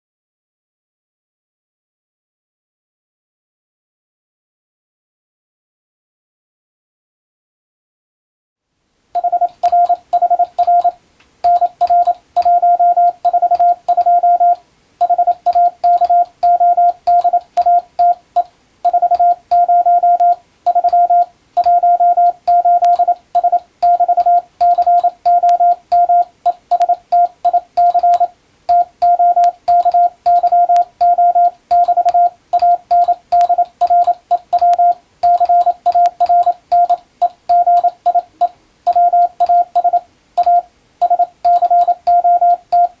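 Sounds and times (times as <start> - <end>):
morse code beeps: 9.2 - 43.0.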